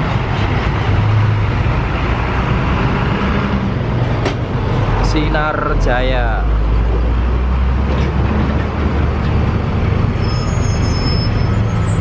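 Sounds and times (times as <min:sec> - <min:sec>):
bus engine rumble: 0:00.0 - 0:12.0
road traffic passing: 0:00.0 - 0:12.0
thin high squeal: 0:10.2 - 0:12.0.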